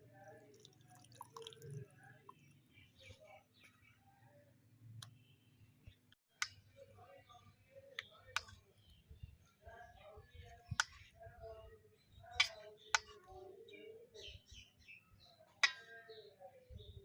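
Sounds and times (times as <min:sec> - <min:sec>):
faint voices: 0:06.7 - 0:14.5.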